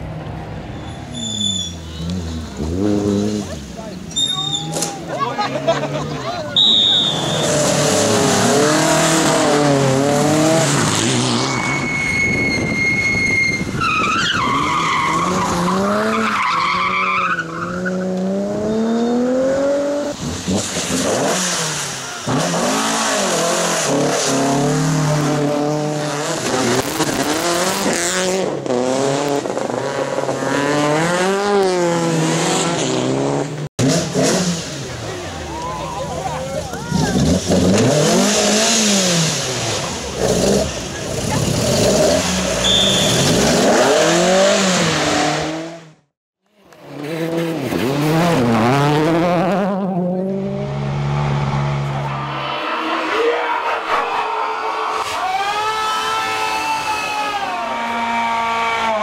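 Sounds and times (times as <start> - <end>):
rally car engines revving: 0.0 - 59.0
tyres squealing and skidding: 0.7 - 18.9, 35.1 - 45.5, 51.3 - 59.0.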